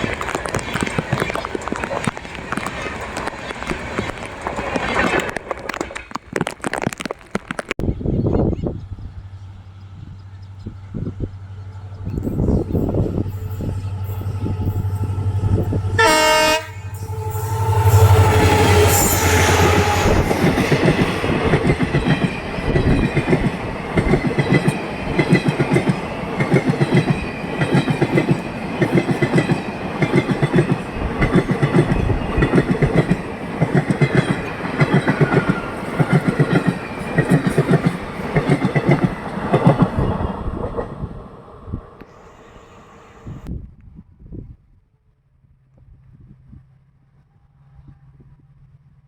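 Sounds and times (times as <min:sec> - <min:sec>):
locomotive rumble: 0:00.0 - 0:43.5
train wheels clattering over rail joints: 0:19.2 - 0:40.9.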